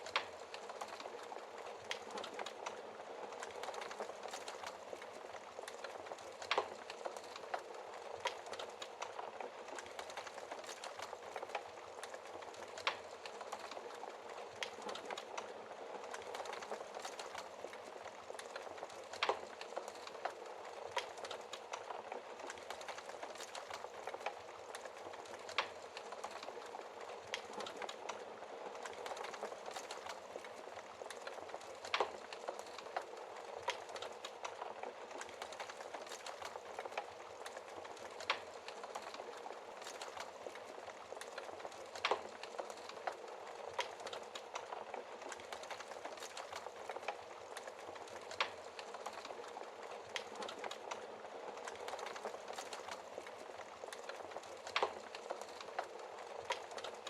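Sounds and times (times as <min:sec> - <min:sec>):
wood fire crackling: 0:00.0 - 0:57.0
burning wood popping: 0:00.1 - 0:57.0.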